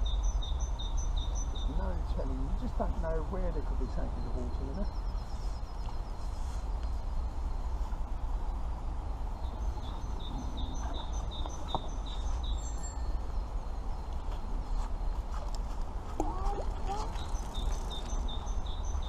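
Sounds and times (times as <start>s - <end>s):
small bird chirping: 0.0s - 2.8s, 9.3s - 15.5s, 16.2s - 19.0s.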